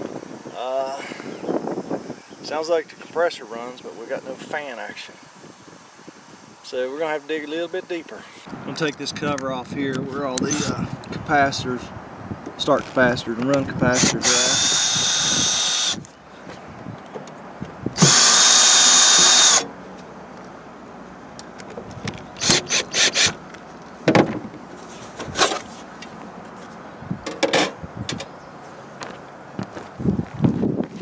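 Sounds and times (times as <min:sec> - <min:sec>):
cordless drill running: 0:13.9 - 0:16.1, 0:18.0 - 0:19.7, 0:22.4 - 0:23.4
screws and cover rattling: 0:14.0 - 0:16.0, 0:18.0 - 0:19.6, 0:22.4 - 0:23.4, 0:24.8 - 0:25.9.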